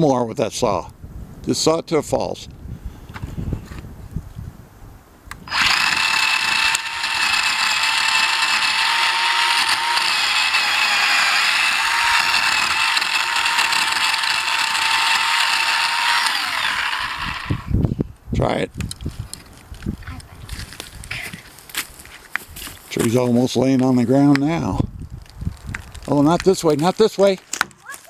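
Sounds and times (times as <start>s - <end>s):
chainsaw cutting tree trunk: 5.3s - 17.8s.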